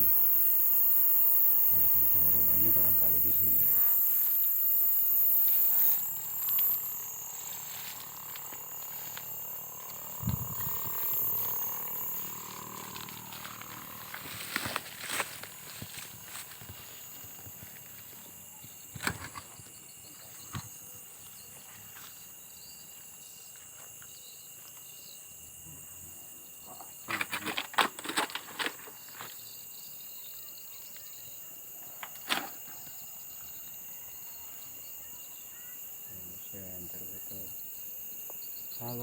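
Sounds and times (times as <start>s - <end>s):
night insects chirring: 0.0s - 39.0s
sharp knocks and crackles: 7.4s - 19.8s.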